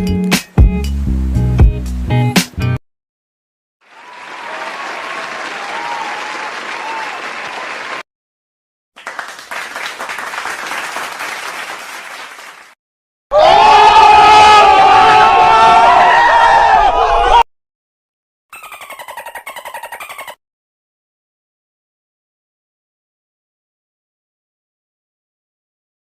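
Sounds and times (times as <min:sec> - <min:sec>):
applause: 0:03.8 - 0:08.0, 0:09.0 - 0:12.8
crowd cheering and shouting: 0:03.9 - 0:08.0, 0:13.3 - 0:17.4
faint cheering voices: 0:03.9 - 0:08.0.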